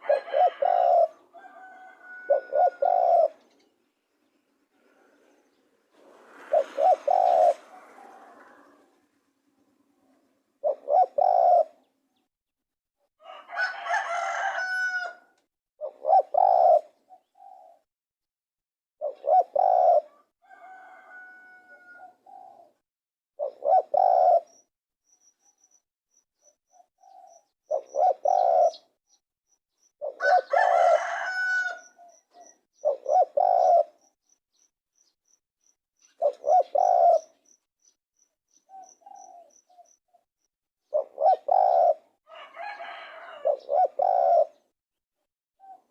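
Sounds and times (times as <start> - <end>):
rooster crowing: 0.0 - 3.3, 7.2 - 8.9, 13.2 - 15.4, 20.1 - 22.2, 30.2 - 32.0, 42.3 - 43.6
dove cooing: 0.0 - 3.7, 4.8 - 9.2, 10.0 - 11.9, 15.8 - 17.9, 19.0 - 22.8, 23.4 - 24.6, 27.0 - 28.9, 30.0 - 34.0, 36.2 - 37.4, 38.7 - 39.8, 40.9 - 44.7.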